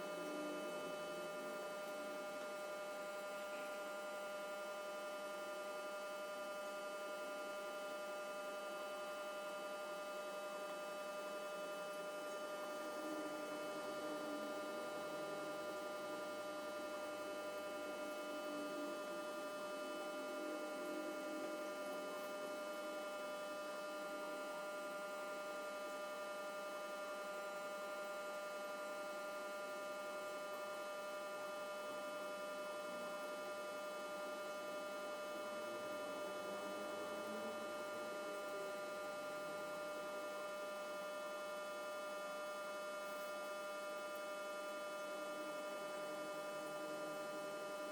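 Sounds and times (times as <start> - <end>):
thin whining tone: 0.0 - 6.4, 10.9 - 25.4
electrical hum: 0.0 - 47.9.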